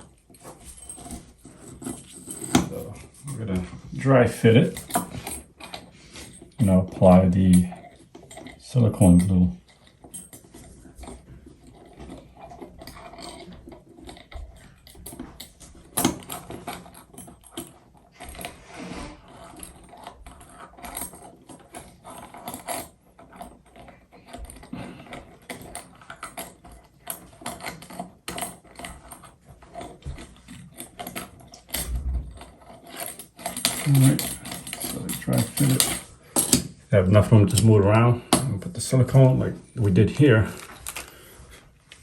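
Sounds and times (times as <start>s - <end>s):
faucet parts clicking and knocking: 0.0s - 18.5s, 19.5s - 39.2s.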